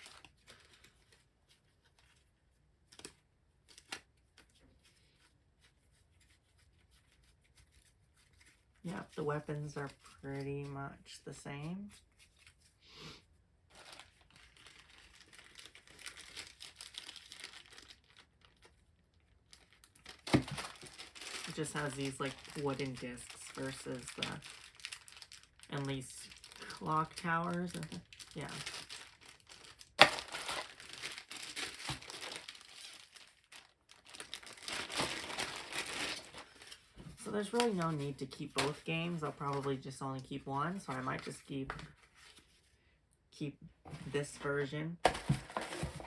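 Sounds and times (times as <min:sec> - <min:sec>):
packaging crinkling and rustling: 0:00.0 - 0:05.0, 0:13.7 - 0:39.8, 0:45.0 - 0:46.0.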